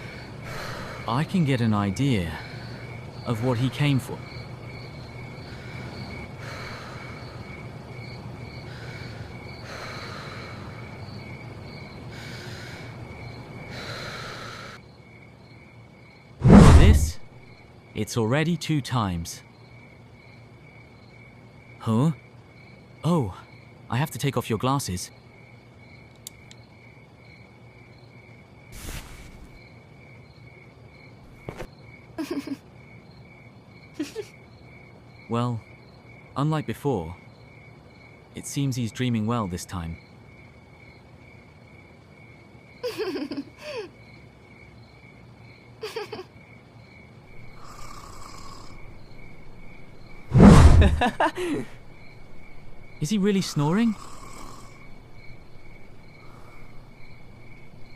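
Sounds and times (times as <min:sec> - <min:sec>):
person breathing heavily: 0:00.0 - 0:01.1, 0:05.4 - 0:07.4, 0:08.7 - 0:10.9, 0:13.7 - 0:14.8, 0:50.3 - 0:51.8, 0:56.2 - 0:57.0
crickets chirping: 0:00.0 - 0:57.9
rustling: 0:28.8 - 0:29.6.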